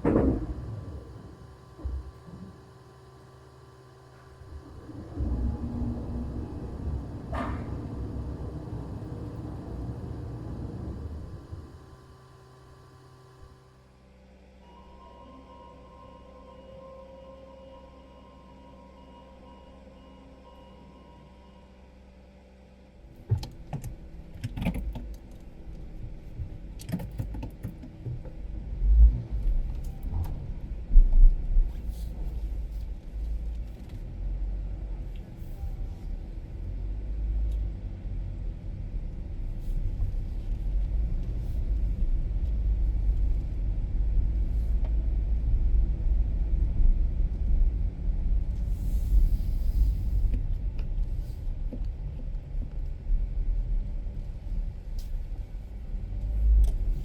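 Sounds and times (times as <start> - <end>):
car rumble: 4.4 - 12.1, 23.0 - 57.0.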